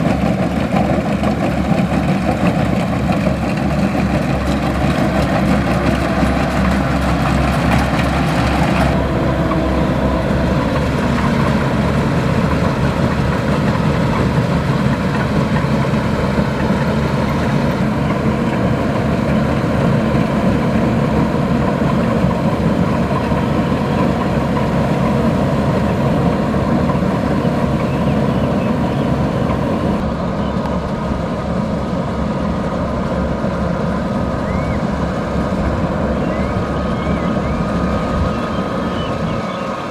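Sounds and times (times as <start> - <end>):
machine working clatter: 0.0 - 30.0
diesel engine running: 0.0 - 39.9.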